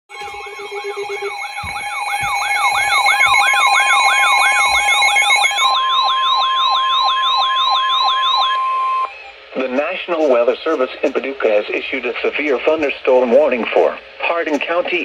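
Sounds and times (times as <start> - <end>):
electronic alarm tone sweeping: 0.1 - 10.4
steady alert tones: 0.1 - 13.5.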